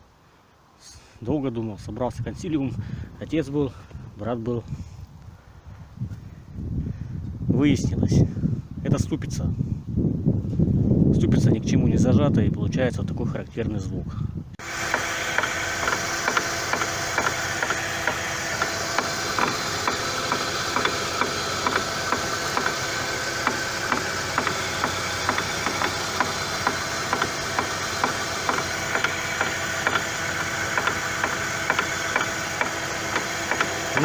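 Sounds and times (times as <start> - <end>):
brake disc knocking on hub: 14.6 - 34.0
car engine running: 14.6 - 34.0.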